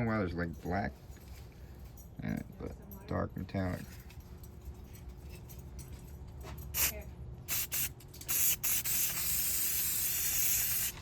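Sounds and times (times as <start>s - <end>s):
aerosol spray can hissing: 7.5s - 11.0s.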